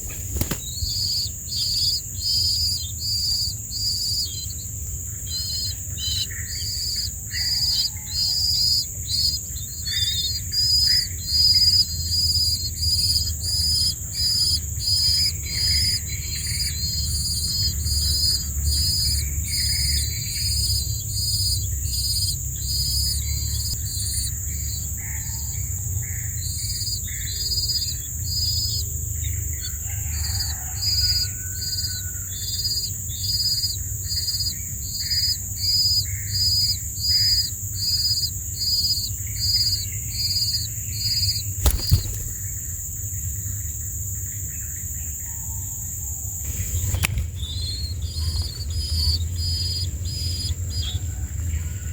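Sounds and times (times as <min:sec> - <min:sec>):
sharp click: 0:41.6 - 0:42.4.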